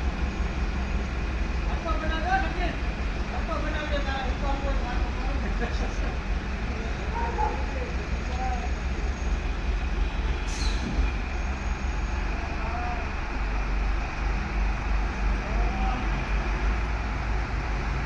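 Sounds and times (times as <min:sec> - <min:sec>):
brief hiss: 0:10.4 - 0:11.1.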